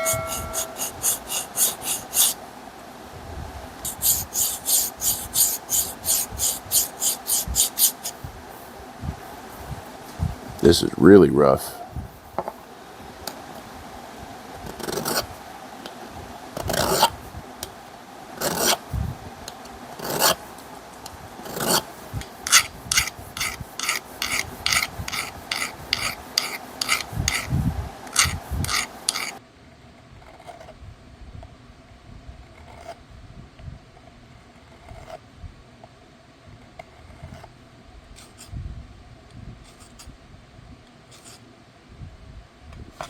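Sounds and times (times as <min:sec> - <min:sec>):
hand file rasping on metal: 0:00.0 - 0:02.4, 0:03.9 - 0:08.2, 0:21.4 - 0:27.5, 0:28.1 - 0:29.4.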